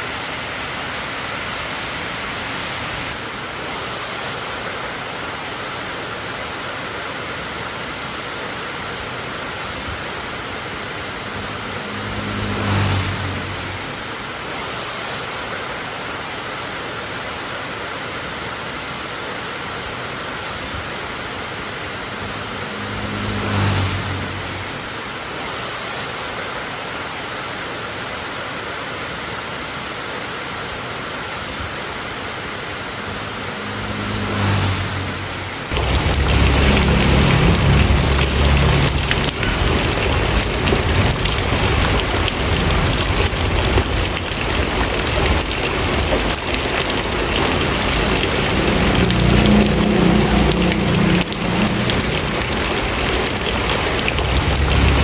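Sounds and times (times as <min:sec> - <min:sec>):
heavy rain: 0:00.0 - 0:55.0
rain white noise hiss: 0:00.0 - 0:55.0
deep rumble: 0:35.1 - 0:46.1, 0:47.2 - 0:55.0.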